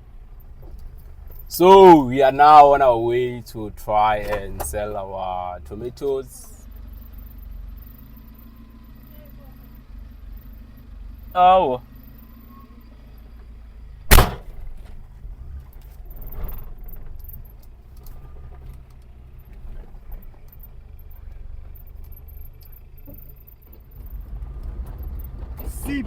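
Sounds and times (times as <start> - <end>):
car interior rumble: 0.0 - 26.0
loud sharp knock: 14.1 - 14.5.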